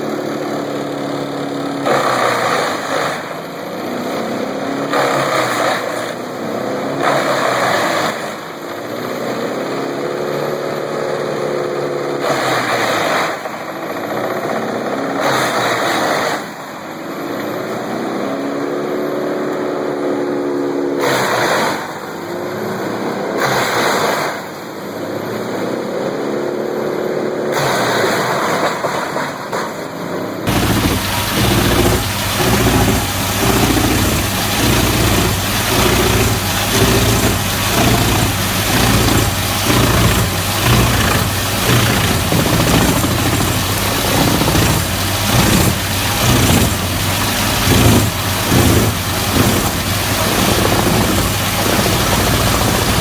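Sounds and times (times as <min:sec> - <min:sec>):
wood chipper engine running: 0:00.0 - 0:21.6, 0:30.5 - 0:53.0
wood being chipped: 0:30.5 - 0:53.0.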